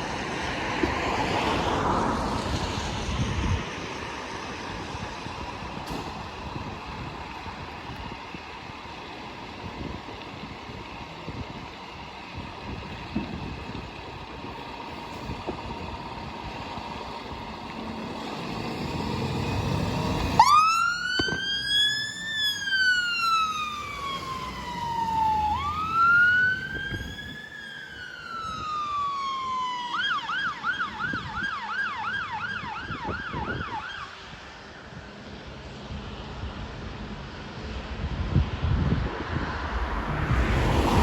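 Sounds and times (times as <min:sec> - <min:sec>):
fire engine siren: 0:00.0 - 0:34.7
fire engine driving: 0:00.0 - 0:41.0.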